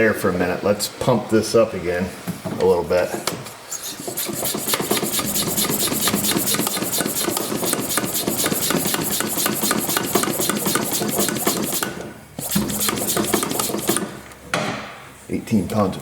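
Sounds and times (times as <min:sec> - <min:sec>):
hand pump rasping strokes: 0:03.7 - 0:14.2.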